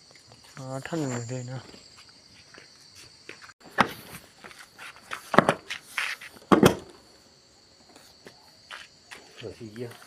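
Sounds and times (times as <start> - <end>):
sharp knocks: 6.5 - 7.0.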